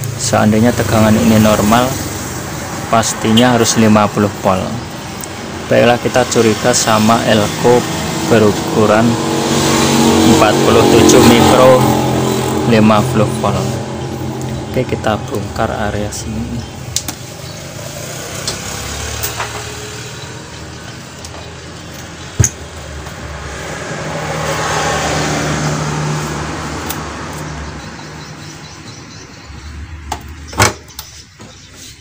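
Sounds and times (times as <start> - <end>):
road vehicle passing by: 0.0 - 30.5
sharp clicks or taps: 16.9 - 17.2, 21.2 - 23.2.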